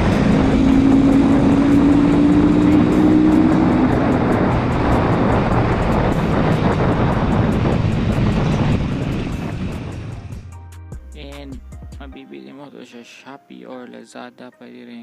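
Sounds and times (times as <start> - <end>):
wind rush on microphone: 0.0 - 10.5
motorcycle engine running: 0.0 - 10.6.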